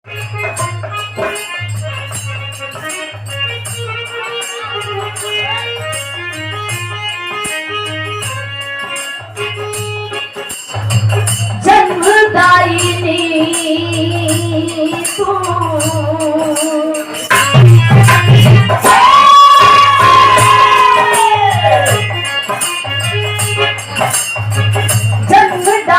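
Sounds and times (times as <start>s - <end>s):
jingling percussion: 0.0s - 25.9s
held melody with vibrato: 0.1s - 25.9s
steady drum beat: 9.3s - 25.9s.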